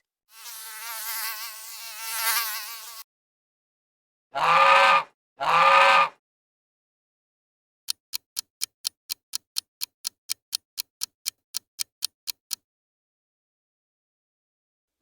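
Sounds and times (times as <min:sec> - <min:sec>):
timer ticking: 0:07.9 - 0:12.6.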